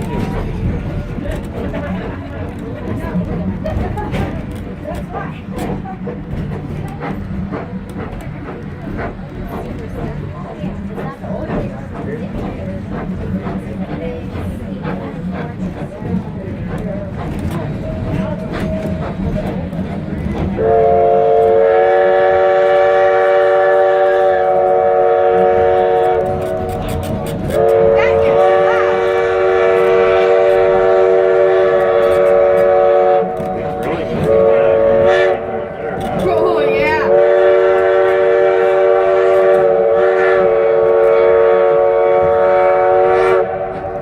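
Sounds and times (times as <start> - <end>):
train horn chord: 20.6 - 26.6, 27.5 - 33.6, 34.2 - 35.6, 37.0 - 43.9.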